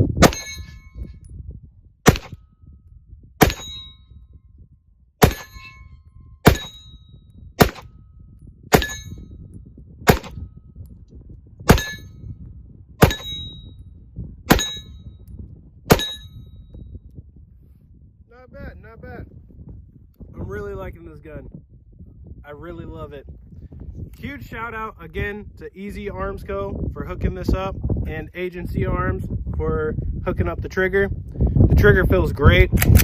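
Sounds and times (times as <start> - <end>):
short metallic ring: 0.2 - 1.4, 3.4 - 4.4, 5.2 - 7.4, 8.0 - 9.5, 11.7 - 12.2, 13.0 - 13.9, 14.5 - 15.2, 15.9 - 16.8
pistol shots: 2.1 - 2.4, 3.4 - 3.8, 5.2 - 5.6, 6.4 - 6.8, 7.6 - 7.9, 10.1 - 10.4, 13.0 - 13.4, 14.5 - 14.8.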